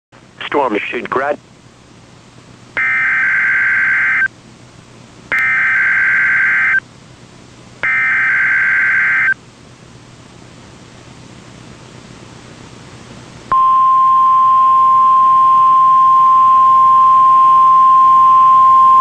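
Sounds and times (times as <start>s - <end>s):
radio hiss: 0.3s - 1.4s
data tone bursts: 2.8s - 4.3s, 5.3s - 6.8s, 7.8s - 9.4s.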